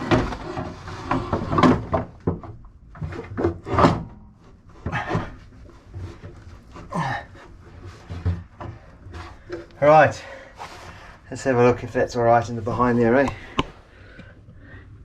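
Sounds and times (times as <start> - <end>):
heavy object bumping and scraping: 0.0 - 11.0.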